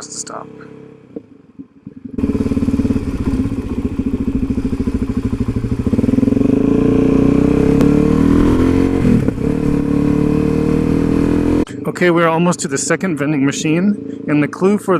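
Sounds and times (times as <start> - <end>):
motorcycle engine accelerating: 0.6 - 11.7.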